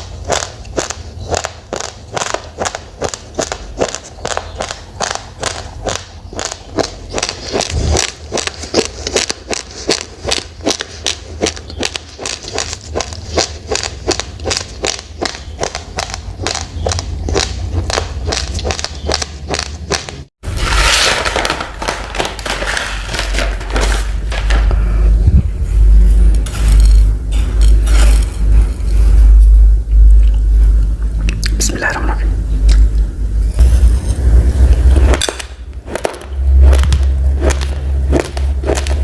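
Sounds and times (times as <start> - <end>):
rice grains being chewed: 0.0 - 20.2, 34.6 - 39.0
loud rough noise: 19.4 - 29.7, 33.4 - 39.0
low rumble: 20.4 - 39.0.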